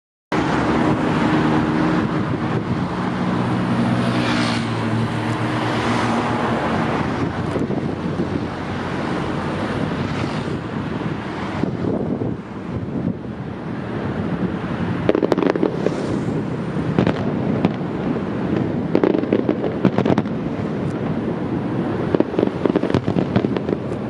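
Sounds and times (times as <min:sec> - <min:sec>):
outdoor rumble: 0:00.3 - 0:24.0
wind on microphone: 0:00.4 - 0:24.0.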